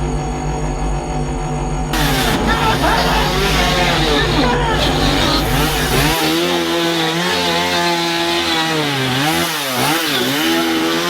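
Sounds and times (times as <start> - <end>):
engine high-pitched drone: 2.0 - 6.7.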